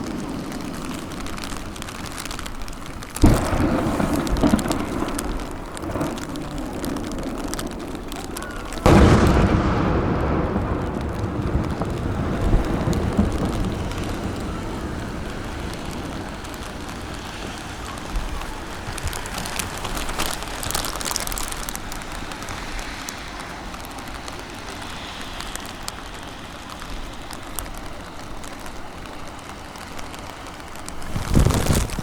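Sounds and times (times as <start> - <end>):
low rumble: 0.0 - 18.1
fireworks crackling: 0.0 - 32.0
firework burst booming: 3.2 - 19.2.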